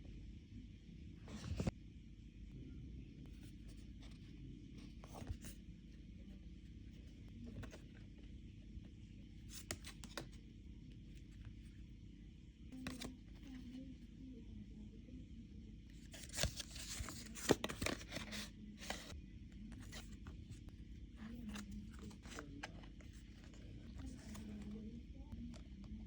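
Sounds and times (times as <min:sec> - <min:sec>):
low steady hum: 0:00.0 - 0:26.0
packaging rustling and scraping: 0:16.1 - 0:19.1.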